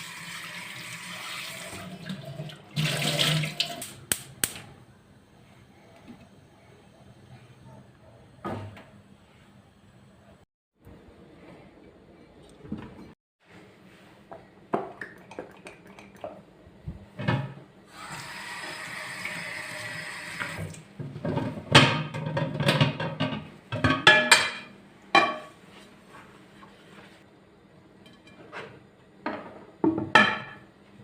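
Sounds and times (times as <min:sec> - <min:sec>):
dishes and utensils clattering: 0:21.1 - 0:25.6, 0:28.0 - 0:30.7.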